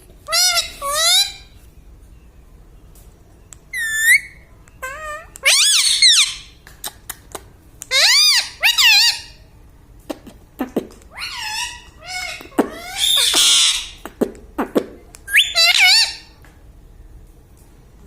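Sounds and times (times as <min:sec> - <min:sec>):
parrot whistled calls: 0:00.3 - 0:01.5, 0:03.7 - 0:06.5, 0:07.9 - 0:09.4, 0:11.1 - 0:14.0, 0:15.3 - 0:16.3
parrot screech: 0:04.9 - 0:06.5, 0:11.1 - 0:14.0, 0:15.3 - 0:16.3
parrot beak clicks: 0:06.6 - 0:08.0.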